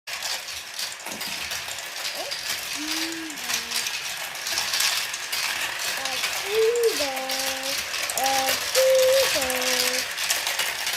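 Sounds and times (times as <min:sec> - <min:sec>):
marbles rattling down plastic run: 0:00.1 - 0:10.9.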